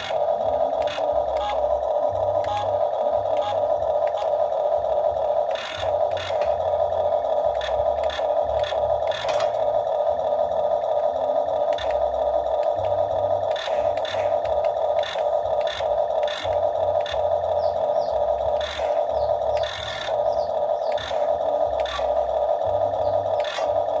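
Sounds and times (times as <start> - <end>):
excavator running: 0.0 - 24.0
knocks and clatter: 7.5 - 9.7.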